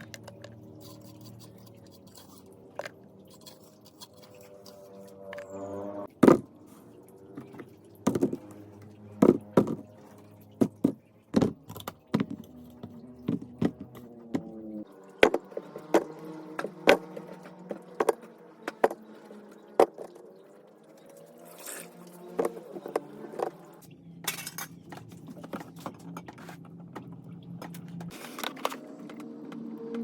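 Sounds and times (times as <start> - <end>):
kitchen items knocking and clacking: 24.2 - 28.8.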